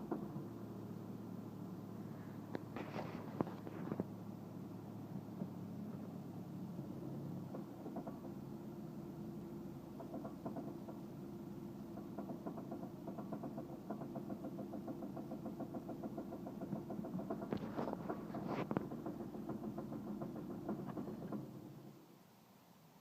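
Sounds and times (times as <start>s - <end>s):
engine idling with knocking tick: 0.0s - 22.1s.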